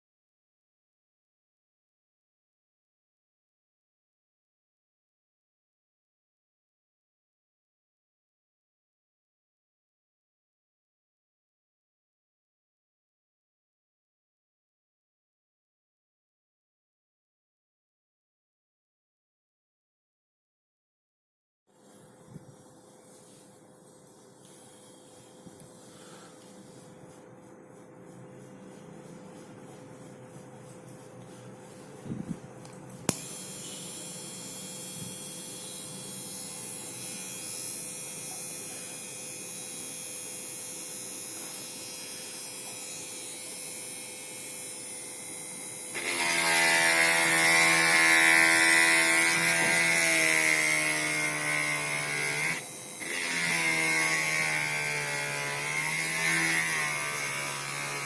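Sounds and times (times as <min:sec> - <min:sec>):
electric motor whirring: 0:33.1 - 0:58.0.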